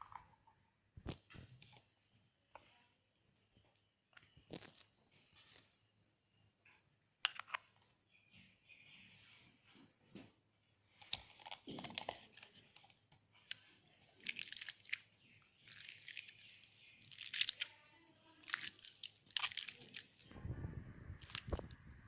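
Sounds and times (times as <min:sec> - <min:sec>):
slime squelching and crackling: 0:11.0 - 0:20.3, 0:21.2 - 0:21.8.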